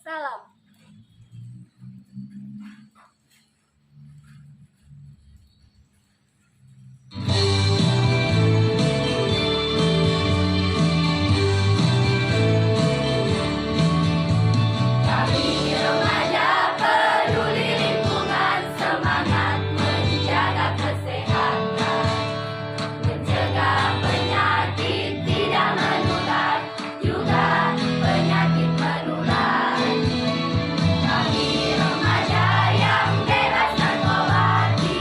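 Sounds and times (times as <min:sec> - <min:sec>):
youth choir singing: 0:15.1 - 0:35.0.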